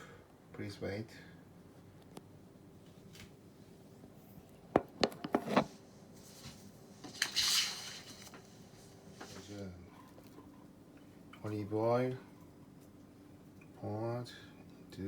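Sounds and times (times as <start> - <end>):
dishes knocking and clinking: 4.8 - 5.7
short rustling hiss: 6.3 - 9.6.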